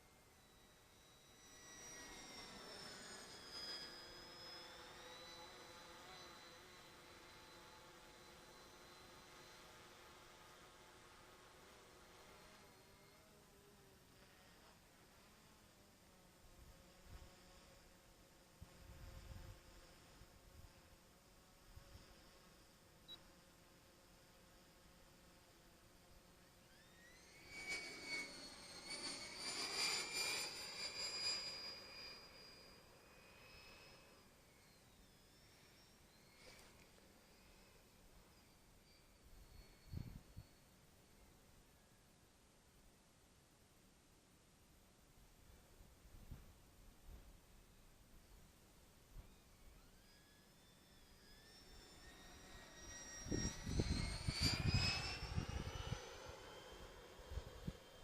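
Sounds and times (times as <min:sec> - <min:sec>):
model jet ducted fan whining: 0:00.0 - 0:42.4, 0:45.5 - 0:58.0
wind rumble on microphone: 0:18.6 - 0:19.7, 0:39.8 - 0:40.4, 0:53.2 - 0:56.0.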